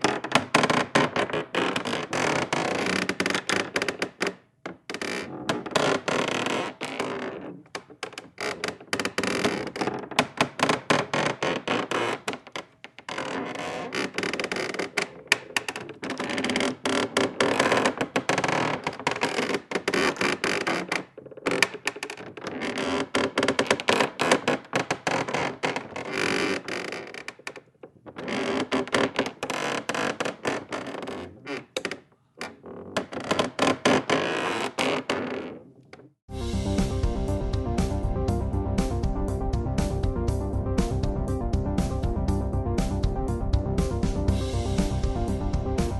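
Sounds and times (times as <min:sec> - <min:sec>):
wood creaking under strain: 0:00.0 - 0:36.2.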